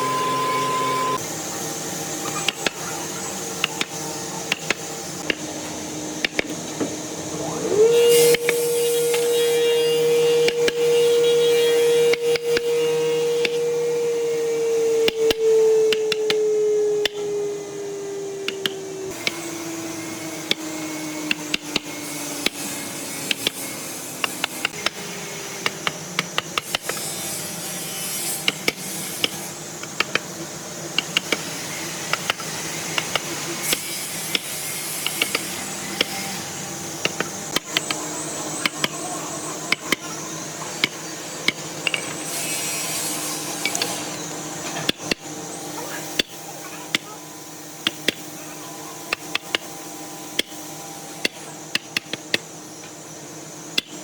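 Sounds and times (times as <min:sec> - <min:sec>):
machine hum winding down: 0:00.0 - 0:02.3
steady background noise: 0:00.0 - 0:54.0.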